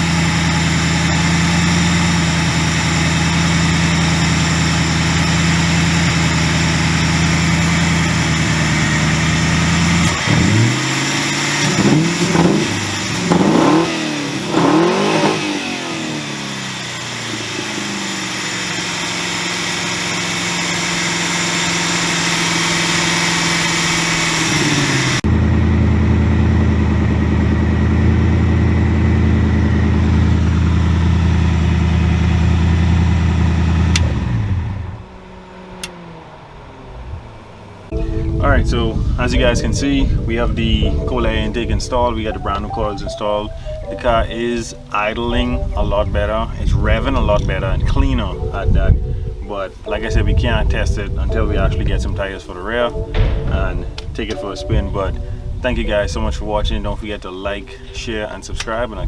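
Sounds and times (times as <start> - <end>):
car engine idling and revving: 0.0 - 38.0.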